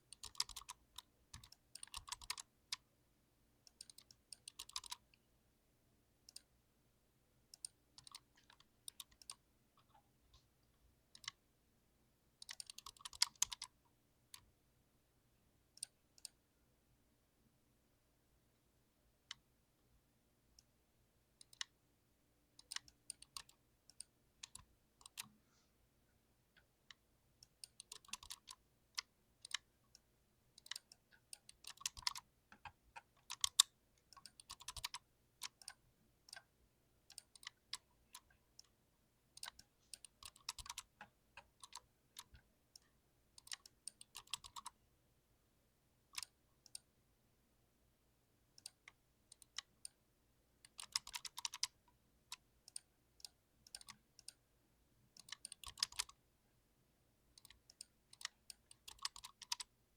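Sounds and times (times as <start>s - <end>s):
mechanical keyboard keys clacking: 0.1s - 0.8s, 1.4s - 2.4s, 3.8s - 5.0s, 12.4s - 13.7s, 27.6s - 28.6s, 30.6s - 35.8s, 50.7s - 51.7s, 57.4s - 59.7s.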